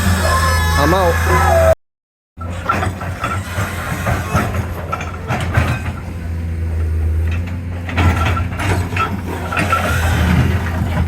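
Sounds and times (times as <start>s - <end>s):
clanks and squeaks of bucket linkage: 2.4s - 11.0s
diesel engine running: 2.4s - 11.0s.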